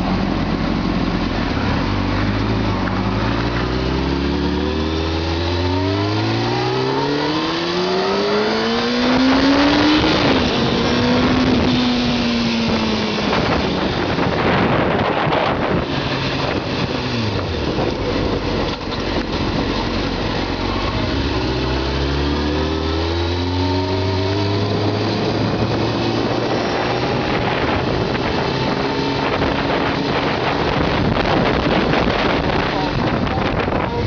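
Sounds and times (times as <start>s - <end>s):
motorcycle engine accelerating: 0.0s - 34.0s
wind rush on microphone: 8.5s - 22.0s, 22.9s - 34.0s.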